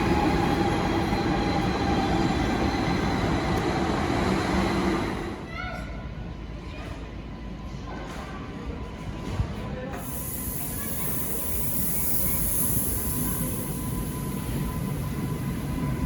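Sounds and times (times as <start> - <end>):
train rumbling: 0.0 - 5.5, 10.0 - 16.0
high steady hiss: 10.0 - 14.6.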